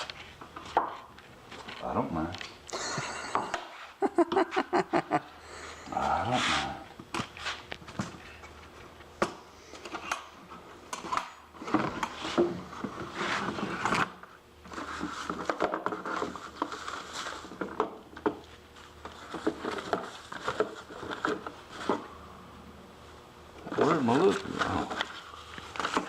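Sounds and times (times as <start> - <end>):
objects clattering and knocking: 10.9 - 22.1.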